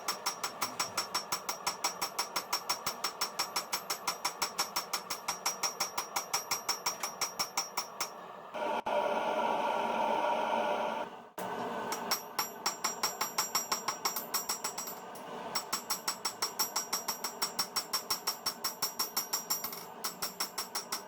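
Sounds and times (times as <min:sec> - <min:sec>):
hammer striking metal on anvil: 0:00.0 - 0:08.2, 0:11.9 - 0:21.0.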